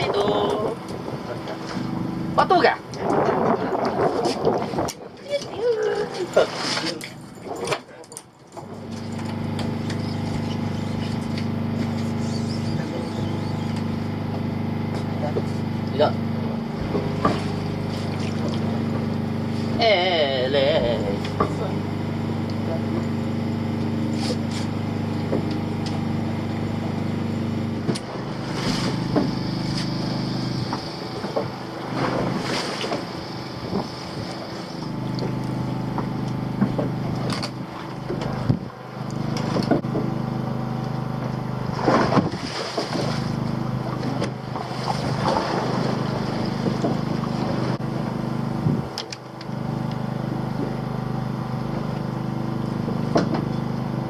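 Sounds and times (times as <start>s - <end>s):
boat engine running: 0.0s - 54.0s
knocks and clatter on board: 35.9s - 38.6s, 39.4s - 40.1s, 53.1s - 53.6s.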